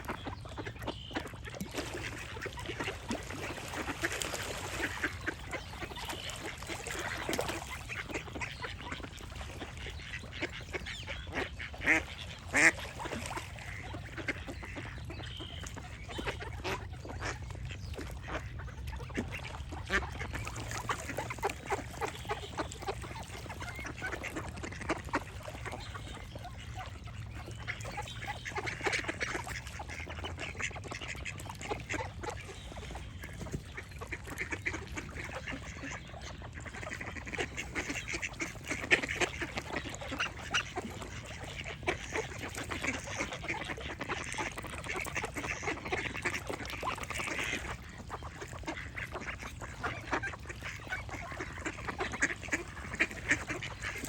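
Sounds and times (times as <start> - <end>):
birds singing: 0.0 - 43.6
ducks quacking: 0.0 - 54.0.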